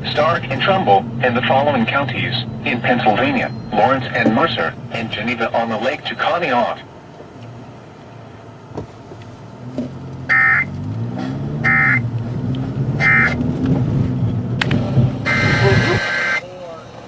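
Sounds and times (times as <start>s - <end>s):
low rumbling hum: 0.0s - 17.0s
warbling data tones: 0.1s - 6.0s, 10.3s - 10.7s, 11.6s - 12.0s, 13.0s - 13.4s, 15.2s - 16.5s.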